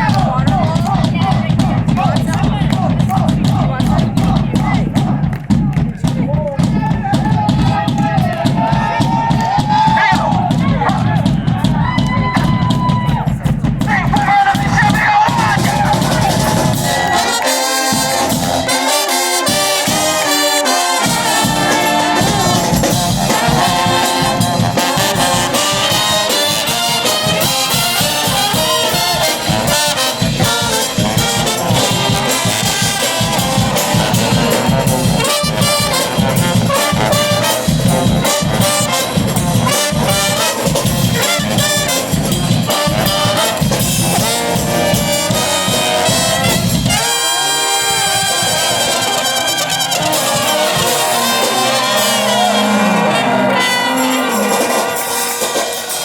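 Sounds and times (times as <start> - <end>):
steady drum beat: 0.0 - 56.0
trumpets and trombones: 6.9 - 56.0.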